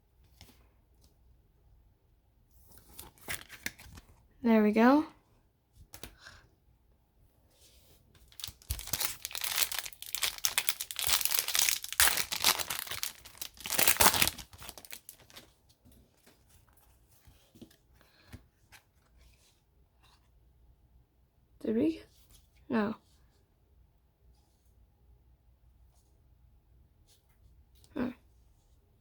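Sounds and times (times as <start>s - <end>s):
cards clicking and rustling: 8.3s - 15.5s
wrapper tearing and crinkling: 8.3s - 15.5s.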